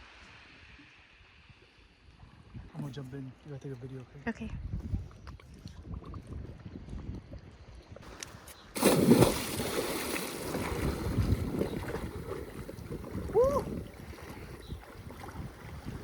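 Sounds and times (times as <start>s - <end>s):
loud splash into water: 8.8s - 12.6s
water churning and sloshing: 8.8s - 16.0s
person crying out: 13.3s - 13.8s.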